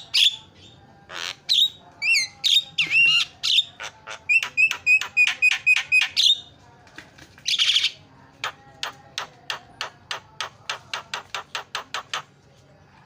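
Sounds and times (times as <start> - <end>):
bird chattering and clicking: 8.4 - 12.3.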